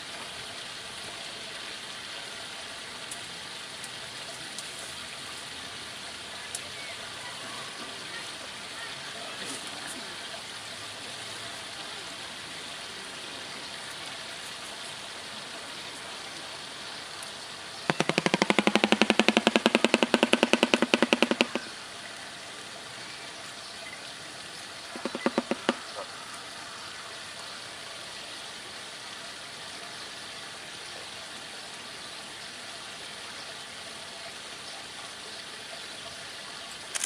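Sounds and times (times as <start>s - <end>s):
bird clattering its bill: 17.9s - 21.7s, 24.9s - 26.0s.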